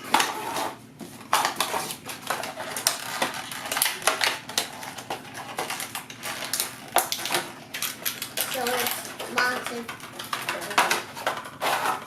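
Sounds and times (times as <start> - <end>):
packaging rustling: 0.0 - 12.0
plastic toy pieces clicking: 2.3 - 11.5.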